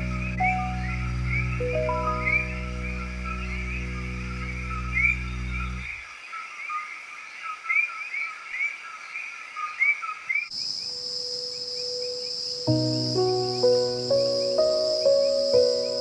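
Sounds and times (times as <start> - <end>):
sustained music chord: 0.0 - 5.9, 12.7 - 16.0
high-pitched insect drone: 0.0 - 6.0, 10.8 - 16.0.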